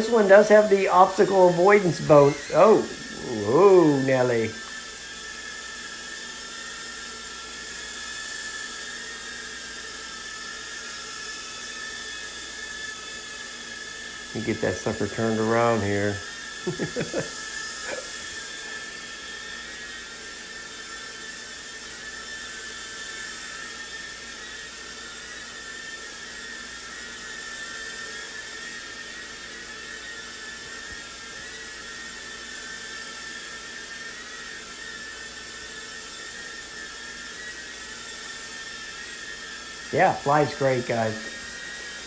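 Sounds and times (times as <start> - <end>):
quadcopter motors whining: 0.0 - 42.0.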